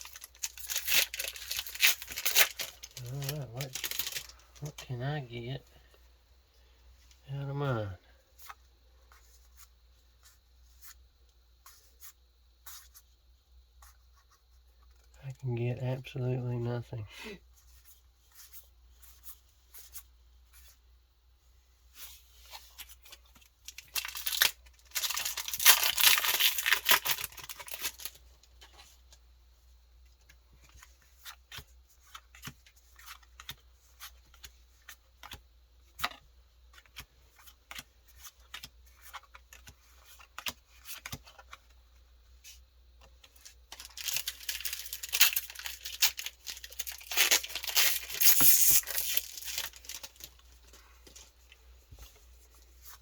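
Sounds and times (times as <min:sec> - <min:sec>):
foil wrapper tearing and crinkling: 0:00.0 - 0:04.7, 0:23.6 - 0:28.2, 0:43.7 - 0:50.4.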